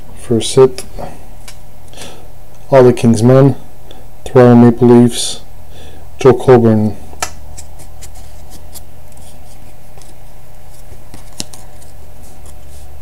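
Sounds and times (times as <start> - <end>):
low electrical hum: 0.0 - 13.0
trading cards clicking and rustling: 7.2 - 12.7.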